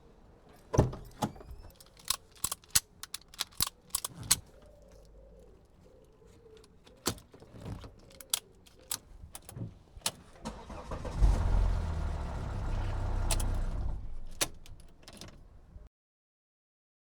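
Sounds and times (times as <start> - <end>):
key in ignition lock clicks: 0.8 - 5.0, 5.9 - 10.7, 13.2 - 15.5
car engine starting and running: 9.0 - 15.7.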